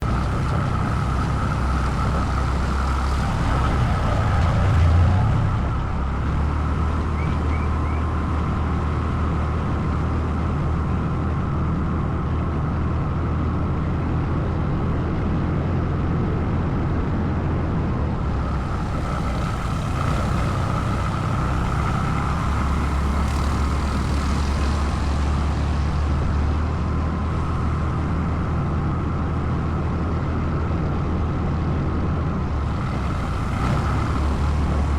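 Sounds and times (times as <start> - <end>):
quad bike engine running: 0.0 - 11.3, 18.2 - 28.8, 32.5 - 34.9.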